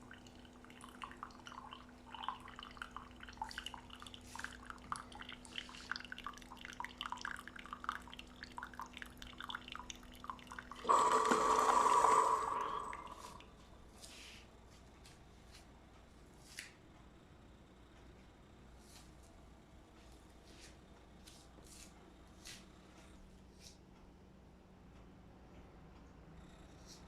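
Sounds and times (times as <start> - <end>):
coffee machine humming: 0.0 - 13.5
liquid dripping: 0.0 - 13.5
coffee machine hissing sputter: 10.5 - 13.5.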